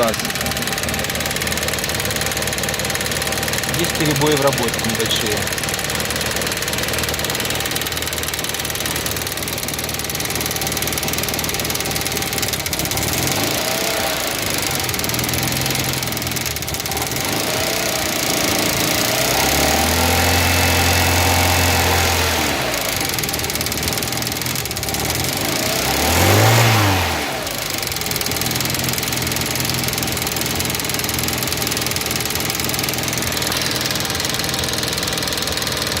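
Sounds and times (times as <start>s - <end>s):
gas injectors knocking: 0.0s - 26.8s, 27.5s - 36.0s
car engine idling unevenly: 0.0s - 36.0s
gas injectors clicking rapidly: 3.6s - 9.2s.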